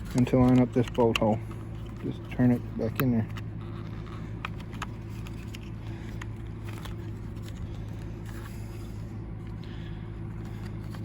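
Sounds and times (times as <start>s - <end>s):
faint clicks of lock parts: 0.0s - 7.7s
low mechanical hum: 0.0s - 11.0s.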